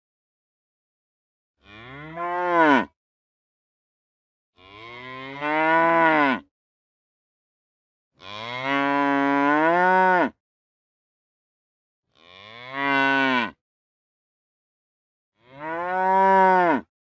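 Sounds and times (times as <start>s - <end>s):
cow mooing: 1.6s - 2.9s, 4.6s - 6.5s, 8.2s - 10.4s, 12.2s - 13.6s, 15.4s - 16.9s.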